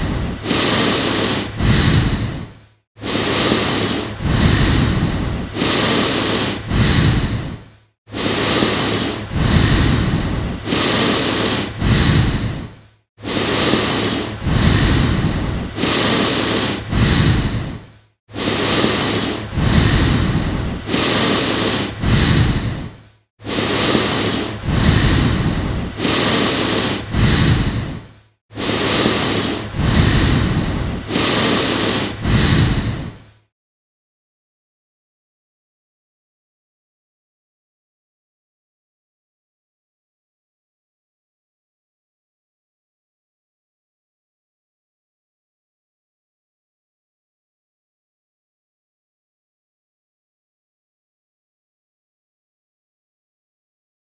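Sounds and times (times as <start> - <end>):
person breathing hard: 0.0 - 33.4.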